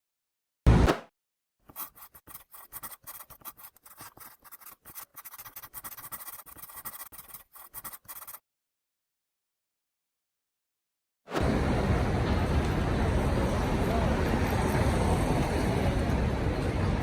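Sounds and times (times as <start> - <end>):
rapid scratching or rubbing: 1.7 - 8.4.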